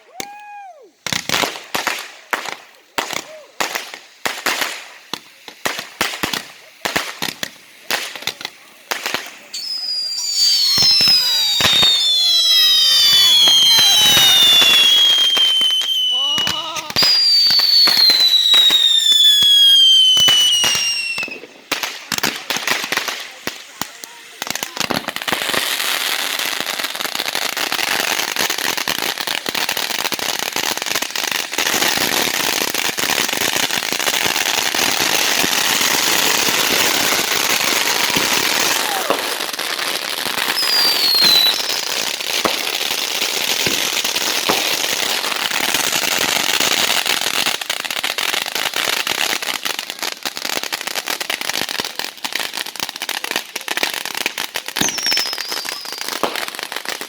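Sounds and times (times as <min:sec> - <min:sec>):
fireworks crackling pops: 0:00.0 - 0:57.0
falling whistle: 0:09.6 - 0:21.3.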